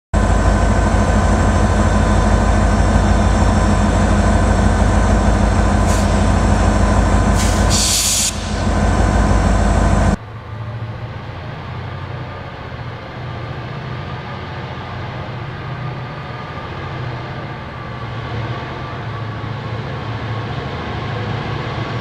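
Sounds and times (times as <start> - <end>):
diesel locomotives working hard: 0.2 - 22.0
brief hiss: 7.3 - 8.6.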